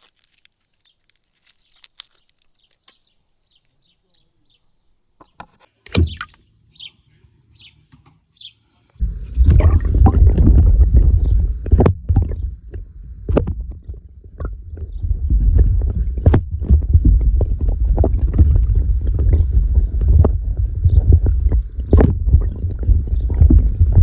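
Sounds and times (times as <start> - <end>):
sharp crackles and pops: 0.0 - 3.8, 9.4 - 24.0
wind buffeting microphone: 9.0 - 24.0.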